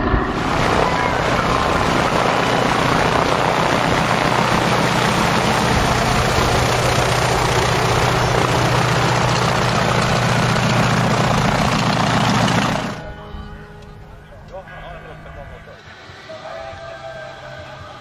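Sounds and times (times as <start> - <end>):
wind noise rushing: 0.0 - 8.8
light aircraft engine running: 0.0 - 13.0.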